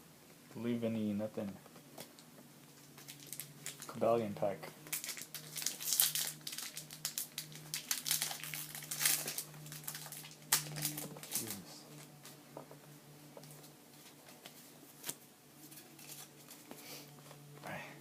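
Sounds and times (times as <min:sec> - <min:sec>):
foil wrapper crinkling: 0:02.8 - 0:04.0, 0:04.8 - 0:12.4, 0:13.4 - 0:16.7.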